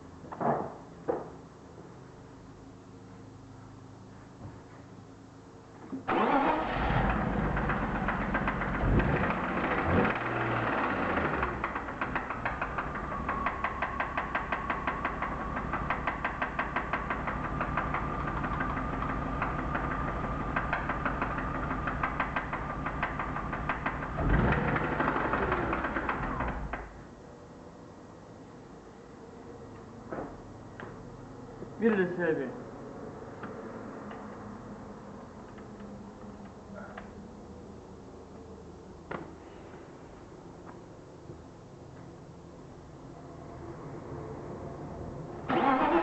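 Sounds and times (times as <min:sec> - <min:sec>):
car engine starting and running: 0:05.9 - 0:27.0, 0:45.3 - 0:46.0
fast even engine knock: 0:12.1 - 0:25.9.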